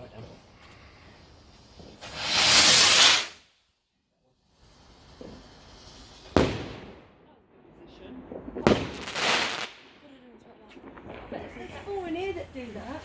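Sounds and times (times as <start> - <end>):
firework hissing: 0.0 - 3.6, 4.4 - 7.2, 8.6 - 9.8
firework bang: 1.8 - 3.4, 6.2 - 7.1, 8.1 - 10.0.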